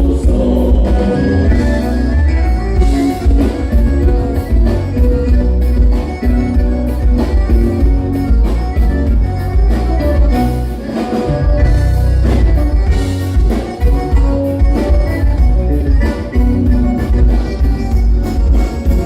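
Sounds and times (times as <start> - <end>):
dance band playing: 0.0 - 19.0.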